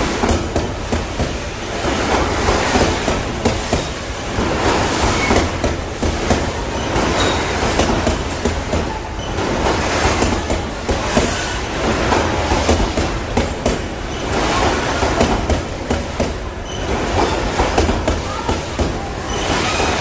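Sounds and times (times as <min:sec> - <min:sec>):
freight train rumbling: 0:00.0 - 0:20.0
wheels clattering over rail joints: 0:00.0 - 0:20.0
high wheel squeals: 0:06.8 - 0:07.6.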